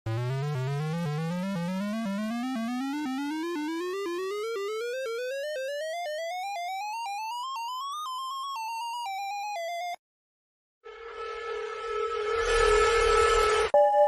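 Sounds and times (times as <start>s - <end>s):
rising synthesized tone: 10.9s - 14.0s.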